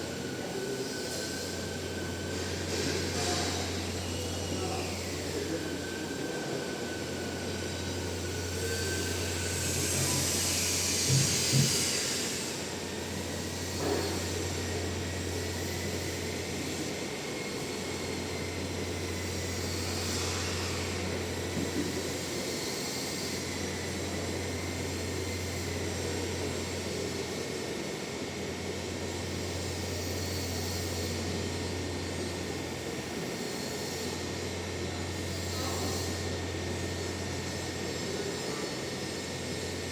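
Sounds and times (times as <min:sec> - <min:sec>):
electric machinery humming: 0:00.0 - 0:39.9
loud hiss: 0:09.1 - 0:12.8.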